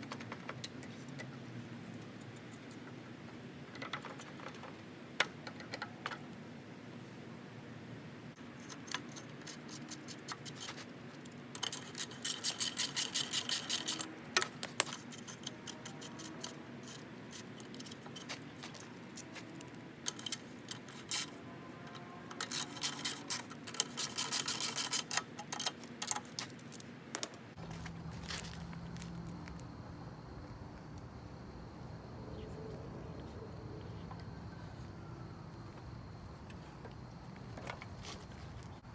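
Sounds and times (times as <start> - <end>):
ratchet wrench clicking fast: 11.6 - 14.1, 22.4 - 26.2.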